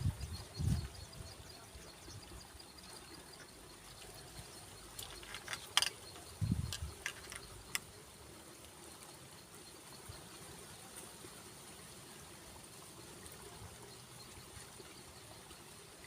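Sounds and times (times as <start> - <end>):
insects chirping: 0.0 - 11.0
sharp clicks: 5.0 - 7.9.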